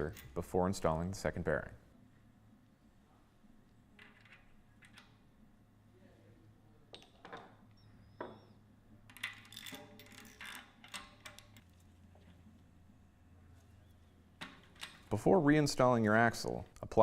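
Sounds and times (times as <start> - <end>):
metal parts clinking: 9.1 - 11.8.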